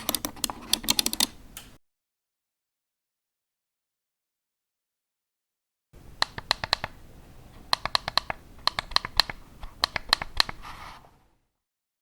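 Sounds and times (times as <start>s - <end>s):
computer mouse clicking: 0.0s - 1.8s, 6.2s - 7.0s, 7.7s - 10.6s.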